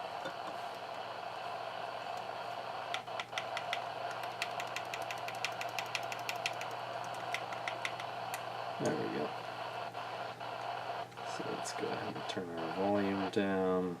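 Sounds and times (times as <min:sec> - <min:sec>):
steady low hum: 0:00.0 - 0:14.0
small clicks and scratches: 0:02.9 - 0:09.0.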